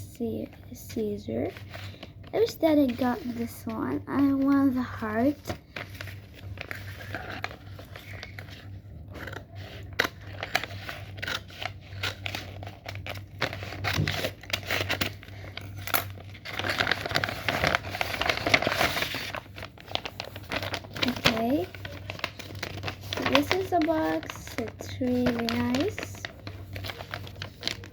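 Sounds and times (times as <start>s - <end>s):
packaging crinkling and rustling: 1.3s - 27.9s.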